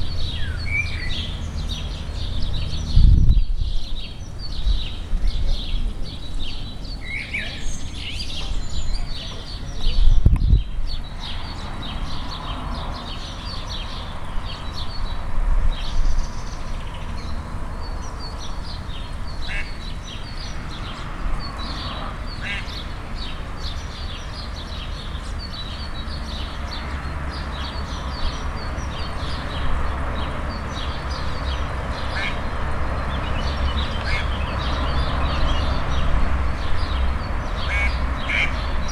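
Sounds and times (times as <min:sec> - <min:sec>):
ducklings peeping: 0:30.7 - 0:36.0.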